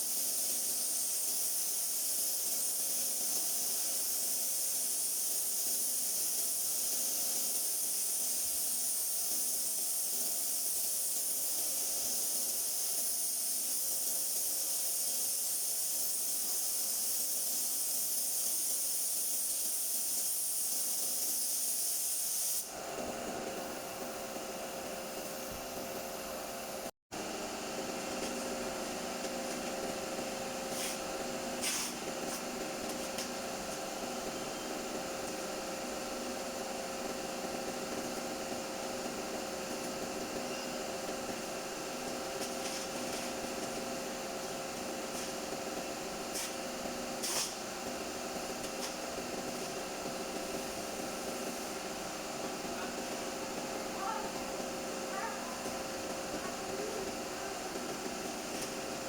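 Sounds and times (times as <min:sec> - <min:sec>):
paint spray gun hissing: 0:00.0 - 0:26.9, 0:28.3 - 0:59.0.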